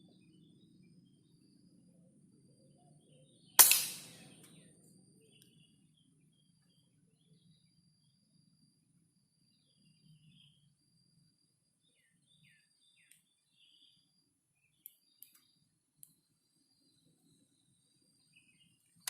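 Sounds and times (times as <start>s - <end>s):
faint insects: 0.0s - 19.0s
air rifle shot: 3.6s - 4.3s
bird chirps: 11.8s - 18.8s.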